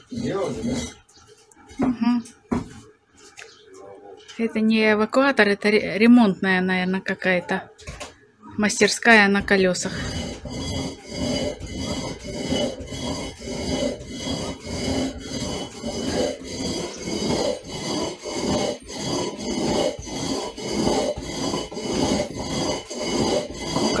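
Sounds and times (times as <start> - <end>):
hand tool filing a hard surface: 0.0 - 1.2, 9.4 - 24.0.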